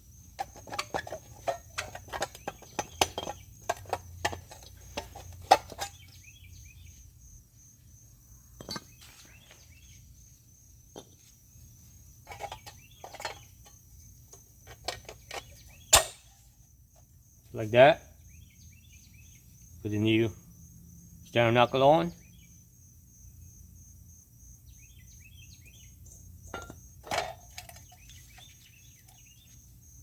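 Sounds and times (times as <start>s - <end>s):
metal clinks and taps: 0.4s - 6.1s, 26.5s - 28.2s.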